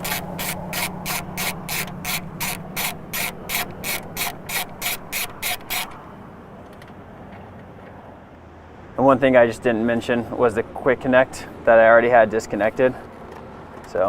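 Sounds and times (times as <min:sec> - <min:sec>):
ratchet wrench clicking: 0:00.0 - 0:06.0.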